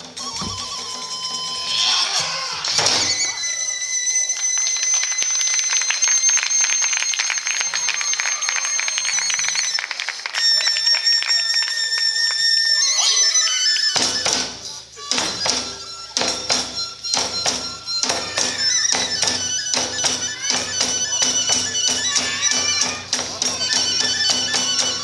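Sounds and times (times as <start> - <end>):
drums beating: 0.0 - 10.0, 13.1 - 25.0
high held flute: 0.0 - 25.0
small hand cymbals striking: 13.0 - 25.0.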